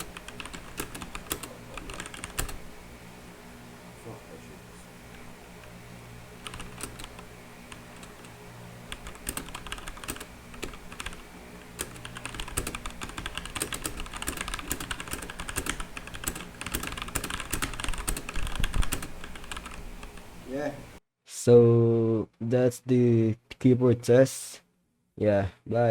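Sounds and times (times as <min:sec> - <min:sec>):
mechanical keyboard typing: 0:00.0 - 0:02.6, 0:06.4 - 0:20.2.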